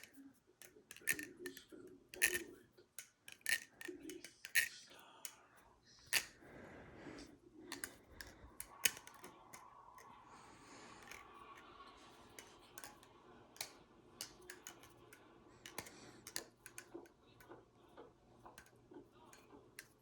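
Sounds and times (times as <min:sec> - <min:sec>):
butterfly knife clicking: 0:00.0 - 0:05.4, 0:06.0 - 0:06.4, 0:07.7 - 0:10.2, 0:12.4 - 0:17.0.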